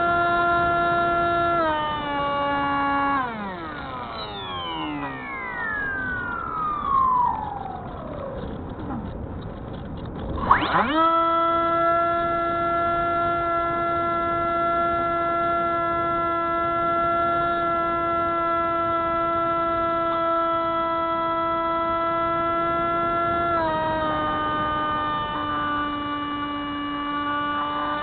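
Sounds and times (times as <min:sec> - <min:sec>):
model plane electric motor whine: 0:00.0 - 0:28.0.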